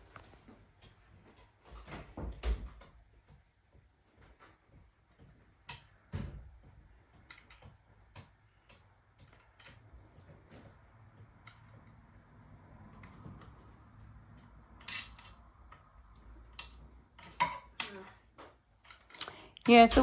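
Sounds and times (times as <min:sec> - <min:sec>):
metal parts clicking and tapping: 0:05.1 - 0:12.0, 0:12.9 - 0:20.0.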